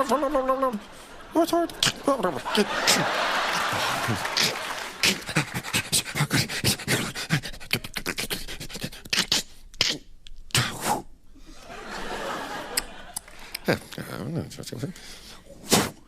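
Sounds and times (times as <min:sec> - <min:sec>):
man making mouth clicks and hisses: 0:01.7 - 0:02.2, 0:04.3 - 0:11.2, 0:15.0 - 0:16.0.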